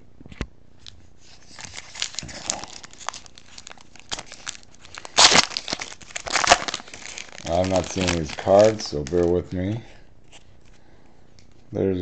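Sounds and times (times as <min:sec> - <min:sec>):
plastic wrapper tearing and crinkling: 0:01.3 - 0:09.8.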